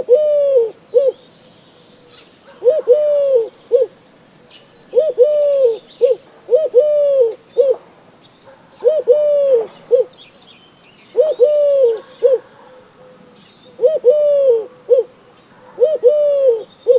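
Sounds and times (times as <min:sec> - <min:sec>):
dove cooing: 0:00.0 - 0:01.2, 0:02.1 - 0:04.0, 0:04.9 - 0:07.9, 0:08.8 - 0:10.2, 0:11.1 - 0:16.9.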